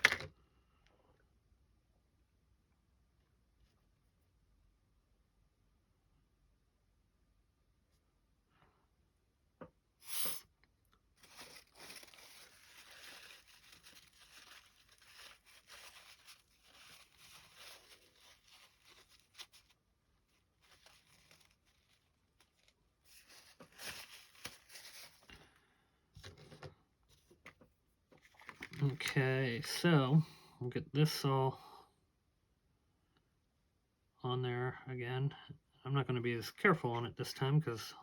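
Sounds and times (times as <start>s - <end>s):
hands handling plastic parts: 0.0s - 0.4s, 11.0s - 25.6s, 26.2s - 29.2s.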